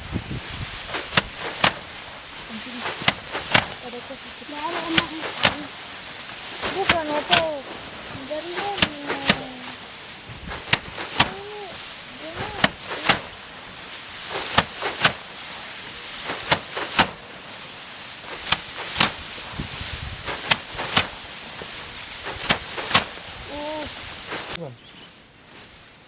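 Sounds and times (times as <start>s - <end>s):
rice sheaves whacking a board: 0.7s - 24.6s.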